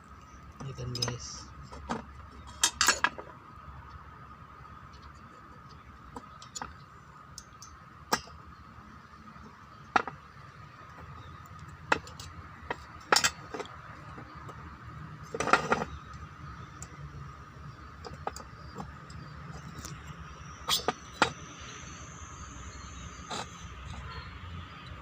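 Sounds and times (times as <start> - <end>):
metal tools clinking: 2.5 - 3.2.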